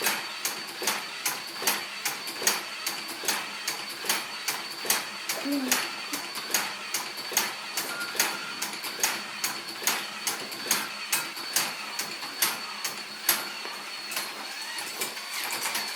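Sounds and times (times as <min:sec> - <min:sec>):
faint high whine: 0:10.8 - 0:15.9.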